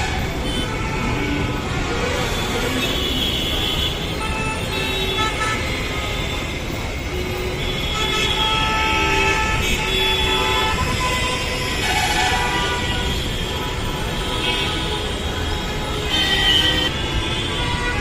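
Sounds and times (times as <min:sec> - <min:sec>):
traffic rumble: 0:00.0 - 0:18.0
vehicle horns honking: 0:00.0 - 0:18.0.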